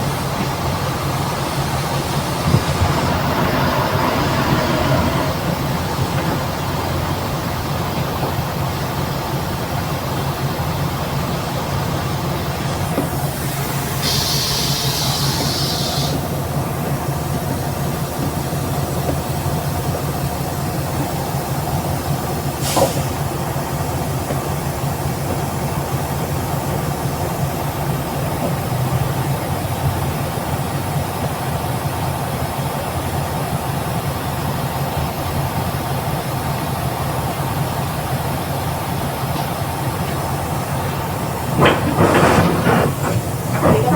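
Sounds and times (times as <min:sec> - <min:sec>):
hiss: 0:00.0 - 0:07.0, 0:12.6 - 0:17.2, 0:22.4 - 0:24.3
bus engine hum: 0:00.0 - 0:43.9
differential growling: 0:01.7 - 0:07.5.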